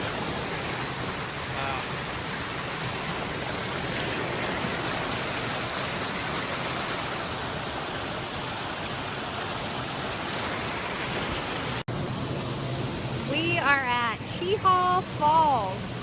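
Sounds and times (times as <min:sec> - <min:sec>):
waterfall rushing over rocks: 0:00.0 - 0:16.0.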